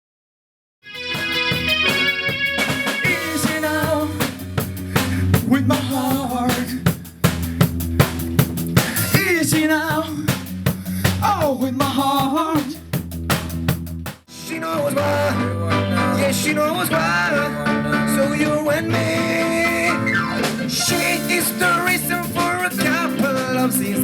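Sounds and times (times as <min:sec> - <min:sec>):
rock band playing live: 0:00.8 - 0:24.0
drum hits: 0:01.2 - 0:14.3, 0:17.7 - 0:24.0.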